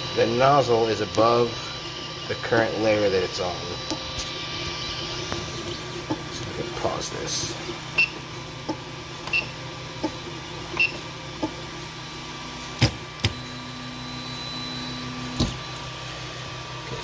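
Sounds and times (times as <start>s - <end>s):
motor whine: 0.0s - 17.0s
printer fan and motor hum: 0.0s - 17.0s.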